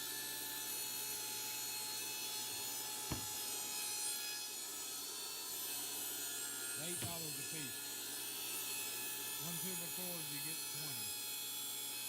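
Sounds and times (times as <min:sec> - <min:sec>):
table saw ripping wood: 0:06.8 - 0:07.8.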